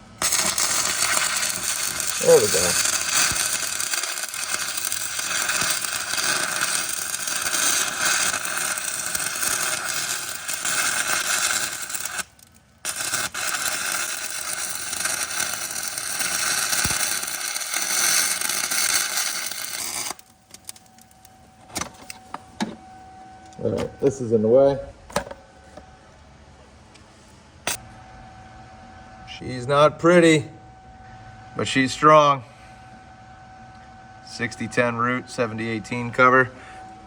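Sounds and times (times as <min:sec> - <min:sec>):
welding arc hissing: 0:00.0 - 0:21.2.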